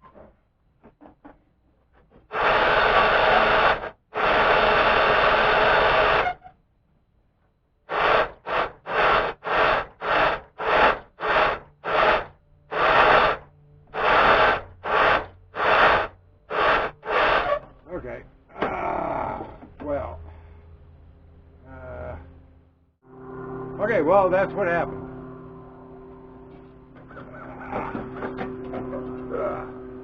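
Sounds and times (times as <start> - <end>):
engine cranking without starting: 7.9 - 20.6.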